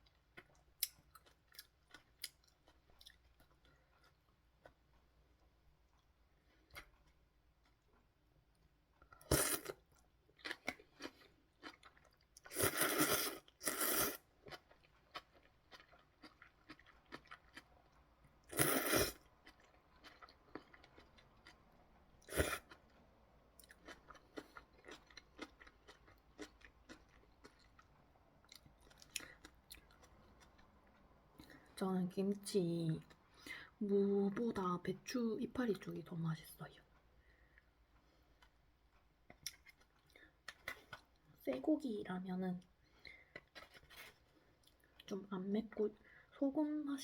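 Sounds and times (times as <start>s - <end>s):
crunchy chewing: 9.0s - 23.0s, 23.6s - 31.0s.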